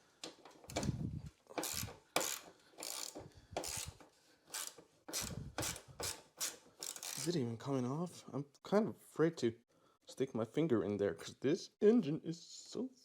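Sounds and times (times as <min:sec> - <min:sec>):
ratchet wrench clicking: 0:01.6 - 0:07.3.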